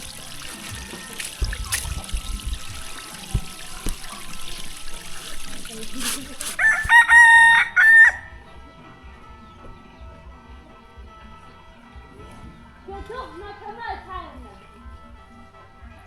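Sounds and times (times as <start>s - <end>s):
rooster crowing: 0.5s - 1.4s, 6.6s - 8.4s.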